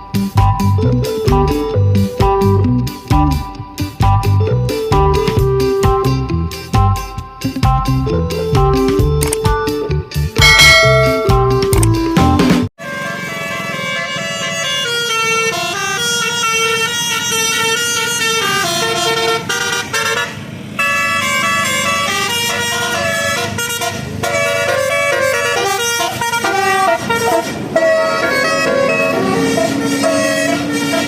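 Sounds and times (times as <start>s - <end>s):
musical air horn melody: 12.8s - 31.0s.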